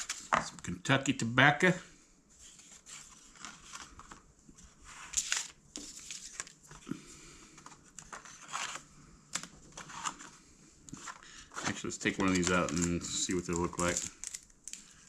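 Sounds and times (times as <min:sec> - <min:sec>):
packaging crinkling: 0:10.9 - 0:15.0.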